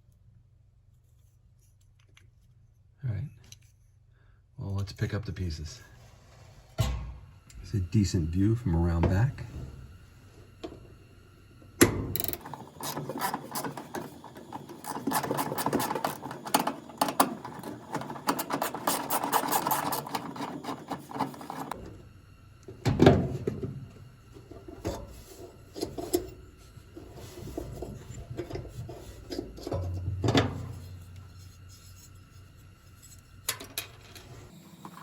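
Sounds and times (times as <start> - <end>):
metal and plastic parts scraping: 12.1 - 21.9, 24.4 - 35.0.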